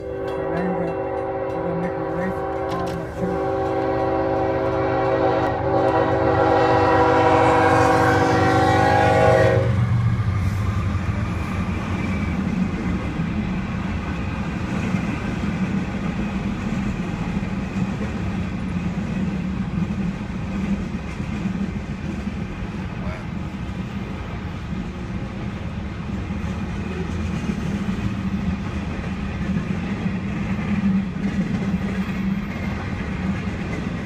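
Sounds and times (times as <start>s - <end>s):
train horn: 0.0s - 10.0s
train wheels rumbling on rails: 0.0s - 34.0s.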